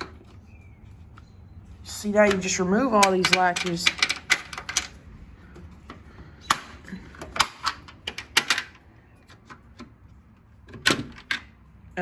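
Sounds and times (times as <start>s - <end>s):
metal latches clicking open: 2.1s - 5.0s, 5.9s - 10.0s, 10.6s - 11.6s.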